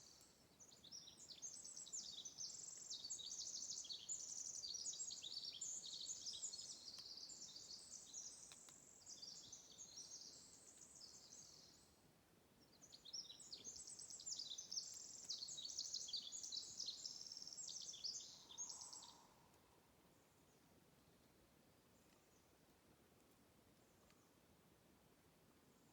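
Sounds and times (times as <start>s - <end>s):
songbird trilling song: 0.0s - 11.8s, 12.6s - 19.4s.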